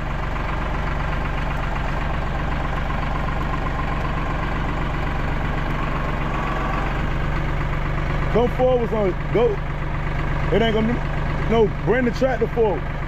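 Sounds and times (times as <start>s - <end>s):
tractor engine running: 0.0s - 13.0s.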